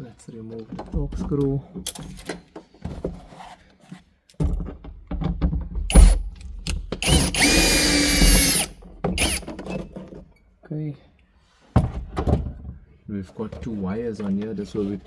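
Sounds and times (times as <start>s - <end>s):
electric screwdriver whining: 5.9s - 6.3s, 7.0s - 9.6s.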